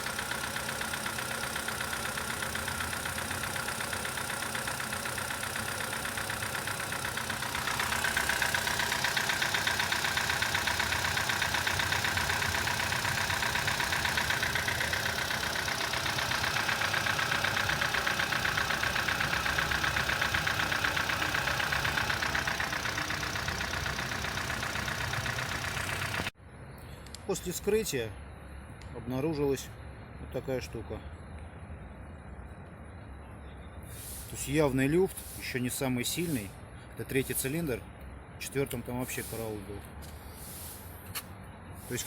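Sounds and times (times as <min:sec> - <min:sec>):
car engine knocking: 0:00.0 - 0:26.4.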